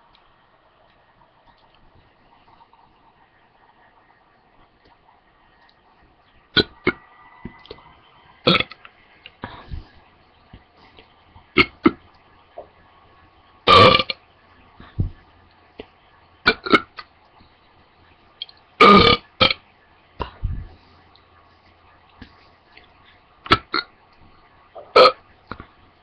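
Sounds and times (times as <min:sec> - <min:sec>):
woman burping: 0:13.7 - 0:14.2, 0:18.8 - 0:19.2, 0:24.9 - 0:25.2.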